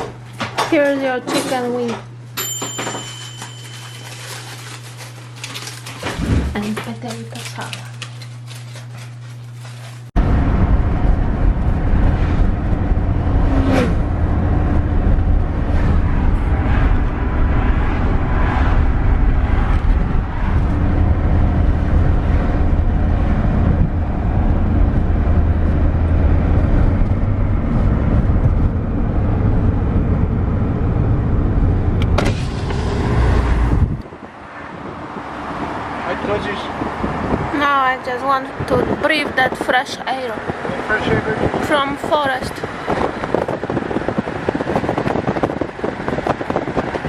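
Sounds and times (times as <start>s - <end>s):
car engine and road rumble: 10.1s - 47.0s.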